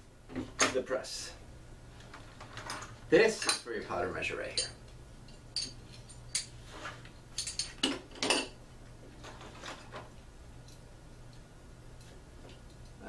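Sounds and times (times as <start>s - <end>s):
low steady hum: 0.0s - 13.0s
soft scrapes: 6.6s - 7.1s.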